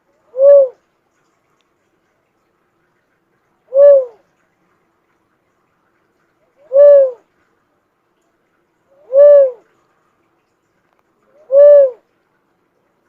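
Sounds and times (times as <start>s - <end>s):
bird hooting: 0.3s - 0.8s, 3.7s - 4.2s, 6.6s - 7.2s, 9.0s - 9.6s, 11.4s - 12.0s.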